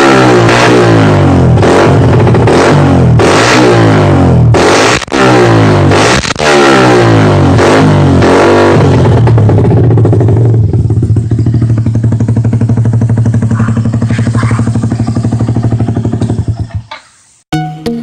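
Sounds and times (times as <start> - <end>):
motorcycle revving and idling: 0.0 - 17.2.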